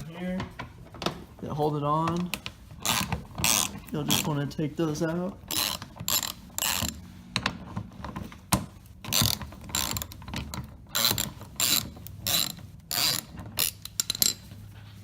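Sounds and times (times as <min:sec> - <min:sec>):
ratchet wrench clicking: 0:05.5 - 0:07.0, 0:09.1 - 0:10.2, 0:10.9 - 0:14.5.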